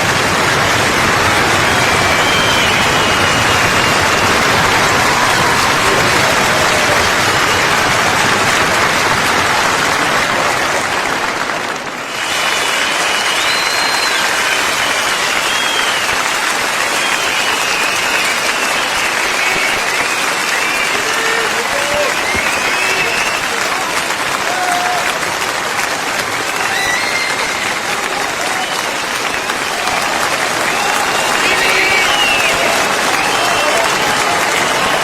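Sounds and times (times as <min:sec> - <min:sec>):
crowd applauding: 0:00.0 - 0:35.0
people whistling: 0:01.6 - 0:04.3, 0:12.1 - 0:23.6, 0:29.9 - 0:35.0.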